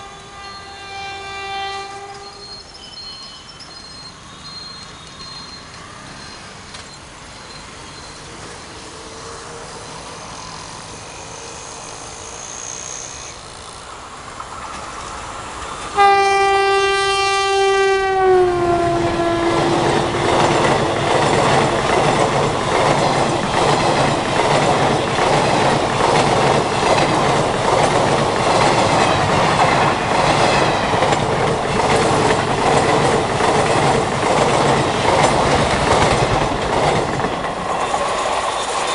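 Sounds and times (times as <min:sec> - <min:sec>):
train horn blast: 0:00.0 - 0:02.6, 0:16.0 - 0:20.4
train rushing past: 0:00.0 - 0:38.9
wheels clattering over rail joints: 0:19.7 - 0:38.9.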